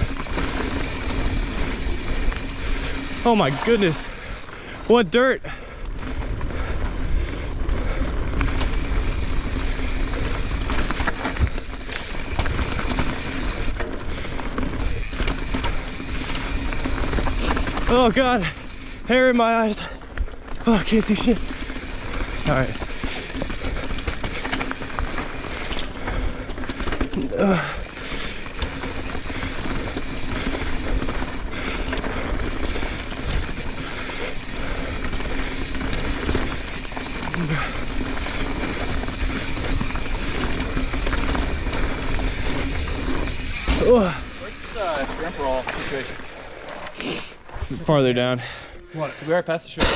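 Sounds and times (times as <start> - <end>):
wind rumble: 0.0 - 4.9, 5.6 - 19.1, 27.8 - 45.4
tyres on dirt: 0.0 - 48.4
bike knocks and rattles: 7.8 - 19.0, 20.6 - 46.3.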